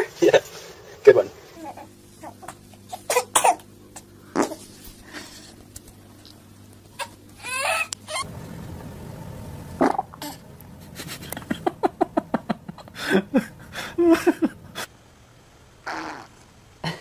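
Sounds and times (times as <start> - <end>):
baby passing gas: 2.9 - 5.5, 15.9 - 16.4.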